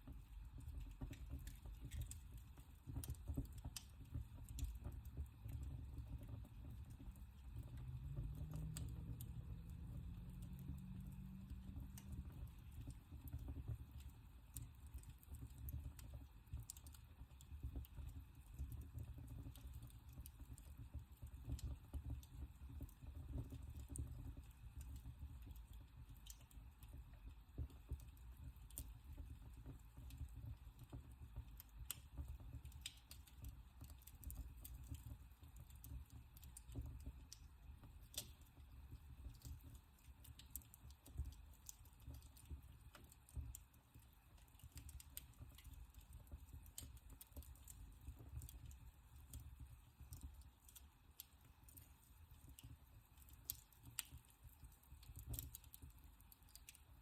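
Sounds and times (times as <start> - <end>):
wood fire crackling: 0.0 - 57.0
low steady rumble: 6.8 - 13.8.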